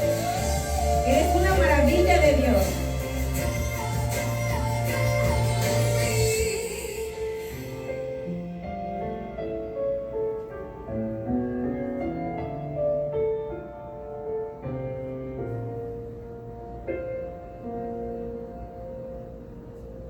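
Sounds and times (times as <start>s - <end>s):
soft piano music: 5.9s - 20.0s.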